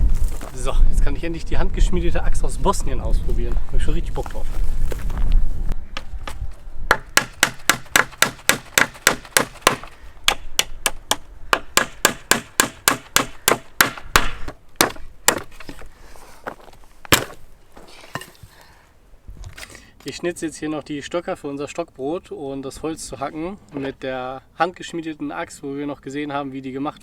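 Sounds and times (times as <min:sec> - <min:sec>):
axe chopping wood: 0:06.0 - 0:15.9, 0:16.5 - 0:17.5.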